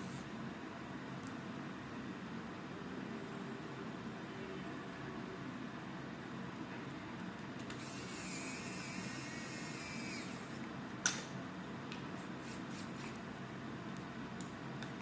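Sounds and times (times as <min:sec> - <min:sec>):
small motor whining: 0:07.7 - 0:10.6.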